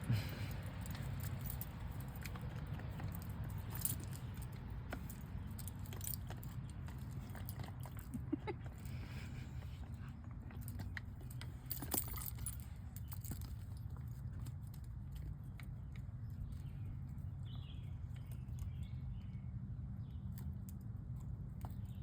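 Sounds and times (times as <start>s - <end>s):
dog gnawing wooden stick: 0.2s - 17.2s.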